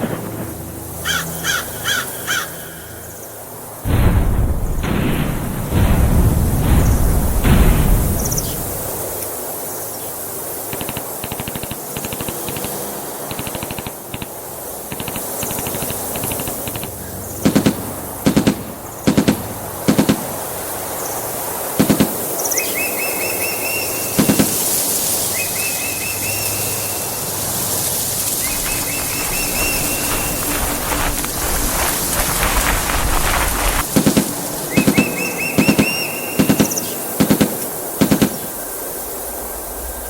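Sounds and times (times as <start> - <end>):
steady background hiss: 0.0 - 40.0
machine-gun bursts: 10.7 - 14.3, 24.2 - 24.7
bird chirps: 22.4 - 24.6, 25.2 - 27.3, 28.3 - 31.2, 34.7 - 37.1.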